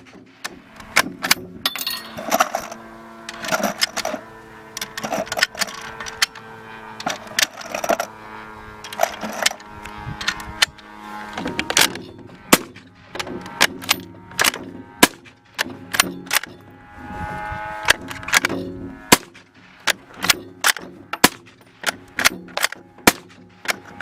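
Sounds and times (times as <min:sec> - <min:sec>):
suppressed gunshots: 0:11.3 - 0:16.6, 0:17.9 - 0:23.8.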